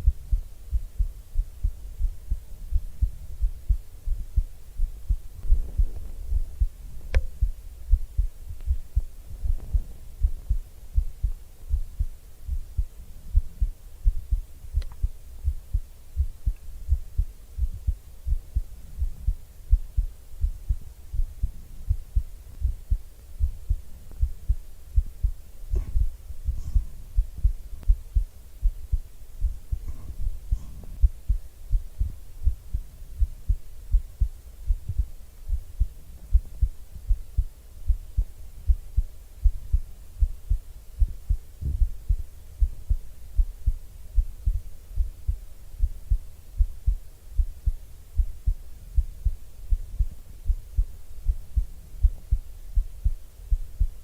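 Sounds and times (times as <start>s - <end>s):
heartbeat thumps: 0.0s - 54.0s
faint clicks: 7.0s - 7.4s, 14.8s - 15.0s.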